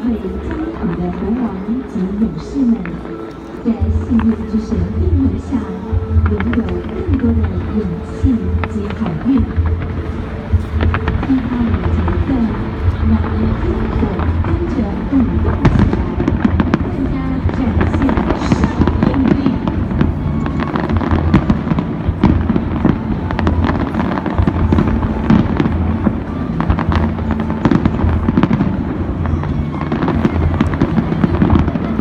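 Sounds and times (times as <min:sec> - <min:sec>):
fireworks bangs and crackles: 0:00.0 - 0:32.0.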